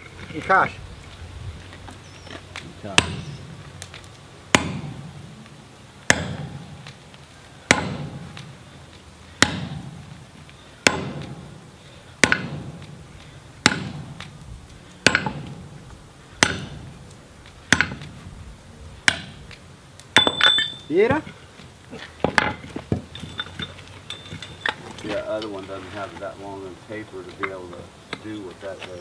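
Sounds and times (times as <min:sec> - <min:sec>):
hammer striking steel on anvil: 0:03.0 - 0:03.4, 0:04.5 - 0:05.1, 0:06.1 - 0:06.8, 0:07.6 - 0:08.5, 0:09.4 - 0:10.1, 0:10.8 - 0:11.6, 0:12.2 - 0:13.0, 0:13.6 - 0:14.3, 0:15.0 - 0:15.8, 0:16.4 - 0:16.9, 0:17.7 - 0:18.1, 0:19.1 - 0:19.4, 0:20.2 - 0:20.9.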